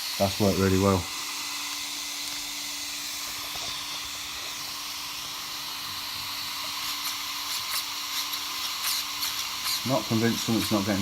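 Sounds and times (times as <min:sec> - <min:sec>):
steady hiss: 0:03.2 - 0:11.0.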